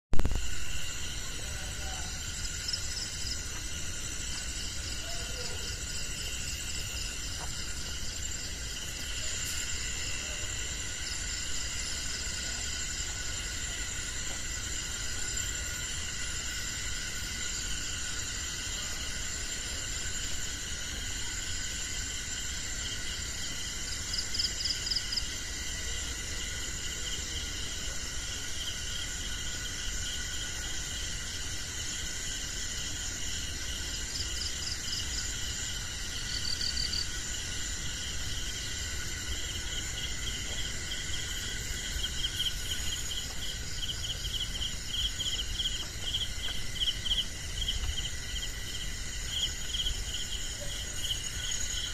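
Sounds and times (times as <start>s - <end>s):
crickets and insects trilling: 0.2s - 51.9s.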